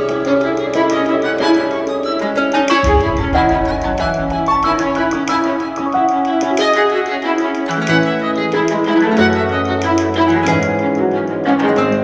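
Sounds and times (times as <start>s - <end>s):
piano: 0.0s - 12.0s
plucked and bowed strings: 0.0s - 12.0s.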